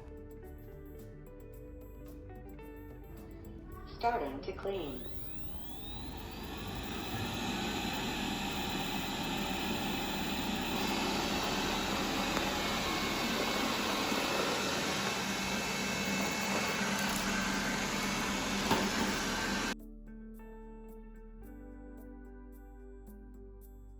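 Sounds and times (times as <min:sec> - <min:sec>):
robot vacuum cleaner whirring: 0:04.8 - 0:19.8.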